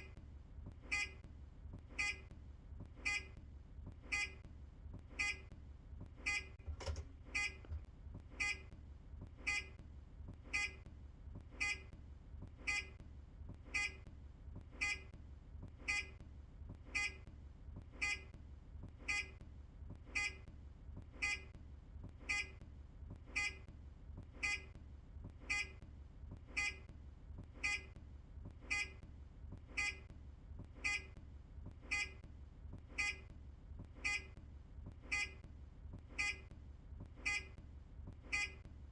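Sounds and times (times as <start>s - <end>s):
low steady hum: 0.0s - 38.9s
turn indicator buzzer beeping: 0.8s - 1.2s, 1.8s - 2.3s, 2.9s - 13.0s, 13.6s - 14.1s, 14.7s - 16.2s, 16.8s - 22.6s, 23.2s - 25.8s, 26.4s - 28.0s, 28.6s - 29.0s, 29.6s - 38.8s.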